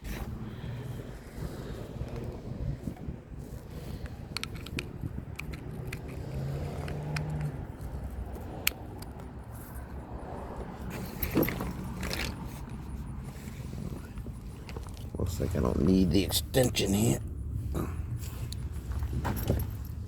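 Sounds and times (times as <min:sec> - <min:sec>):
metal tools clicking and clinking: 0:10.9 - 0:12.8.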